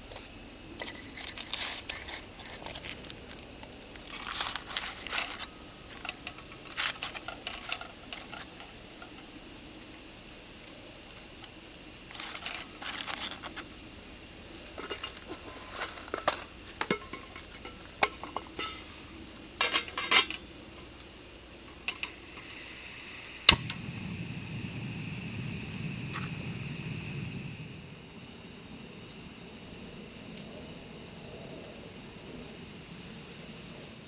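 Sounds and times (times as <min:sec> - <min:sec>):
steady hiss: 0:00.0 - 0:34.0
metal cookware clinking: 0:14.8 - 0:20.9, 0:21.7 - 0:22.2
sharp click: 0:23.5 - 0:23.8.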